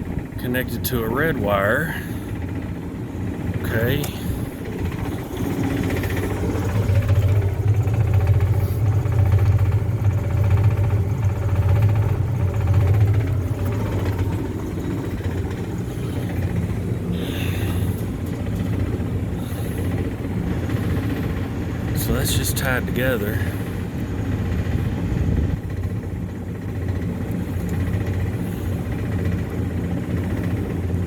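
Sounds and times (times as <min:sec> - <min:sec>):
hvac unit humming: 0:00.0 - 0:31.0.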